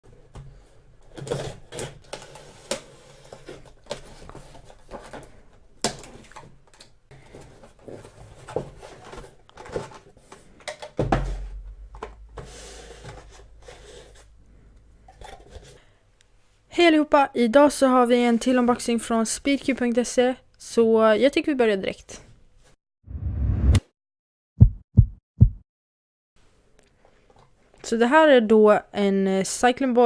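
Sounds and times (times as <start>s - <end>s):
loud bump: 11.0s - 13.6s.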